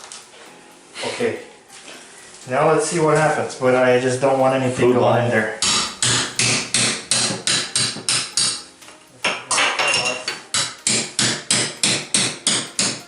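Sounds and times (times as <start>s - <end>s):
hammer striking ceramic tile: 5.6s - 8.6s, 9.3s - 13.0s.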